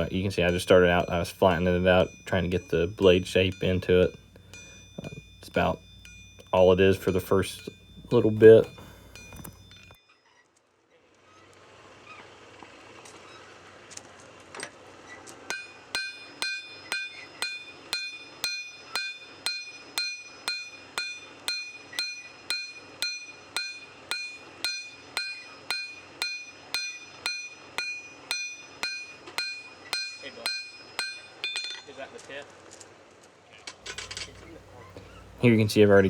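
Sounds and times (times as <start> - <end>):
hammer ringing on steel: 0.0 - 10.0, 15.5 - 32.0, 33.9 - 36.0
steady hiss: 0.0 - 10.0, 34.0 - 36.0.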